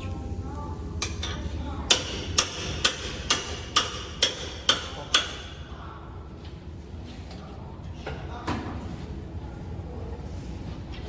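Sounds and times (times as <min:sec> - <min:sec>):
steady low hum: 0:00.0 - 0:11.0
hammer striking metal: 0:01.9 - 0:05.4.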